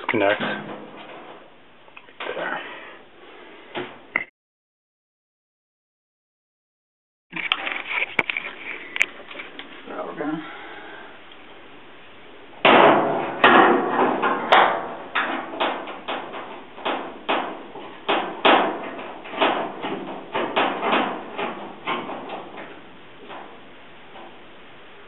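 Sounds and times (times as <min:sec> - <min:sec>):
knocks and rattles on sheet metal: 0:00.0 - 0:01.6, 0:12.6 - 0:25.0.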